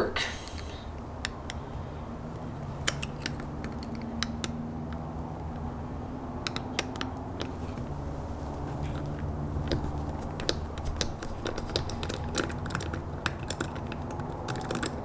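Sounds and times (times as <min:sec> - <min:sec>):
hand tool tapping plastic: 0:06.4 - 0:15.0.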